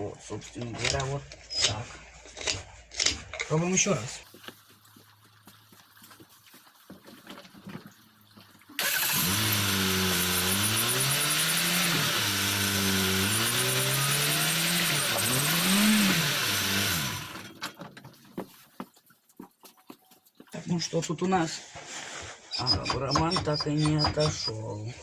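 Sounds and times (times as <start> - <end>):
car engine revving: 8.8 - 17.5.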